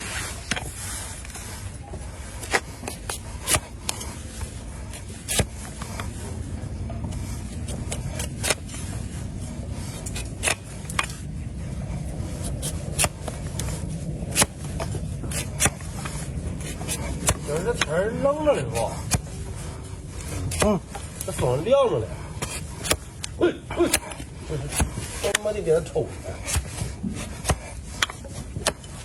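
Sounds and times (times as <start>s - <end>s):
shovel scraping a hoof: 0.0s - 6.2s, 7.1s - 11.3s, 11.9s - 29.0s
steady low rumble: 0.0s - 29.0s.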